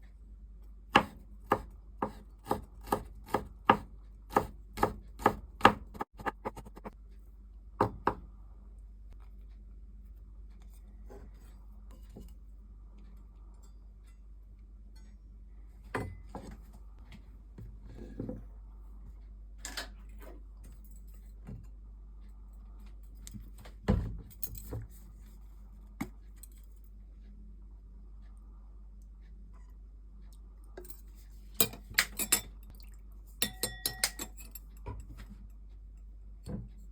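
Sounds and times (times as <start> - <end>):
faint low hum: 0.0 - 36.9
utensils and dishes clinking: 30.8 - 32.7, 33.4 - 35.2.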